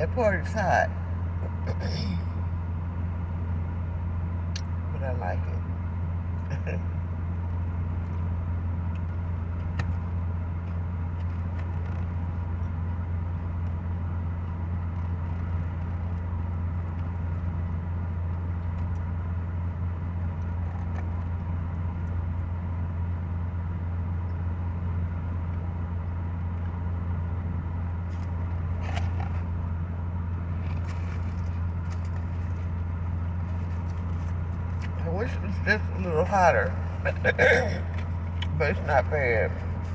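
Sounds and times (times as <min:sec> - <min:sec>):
car idling with air conditioning: 0:00.0 - 0:39.9
brief rustle: 0:30.6 - 0:32.8.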